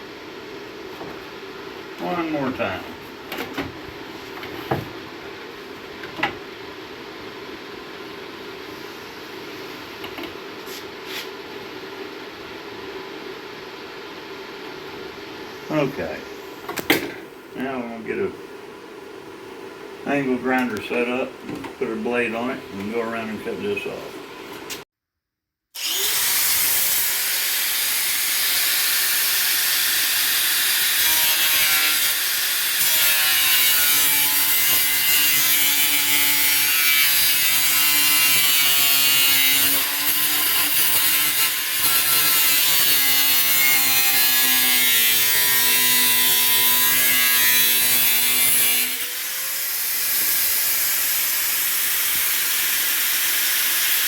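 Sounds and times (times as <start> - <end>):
angle grinder cutting metal: 25.8 - 54.0.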